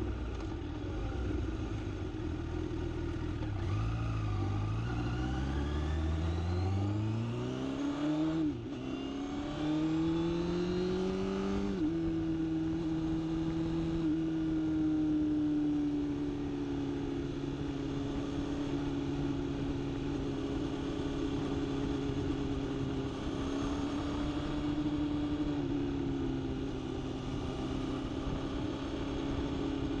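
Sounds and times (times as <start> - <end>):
vehicle engine accelerating: 3.3 - 14.7.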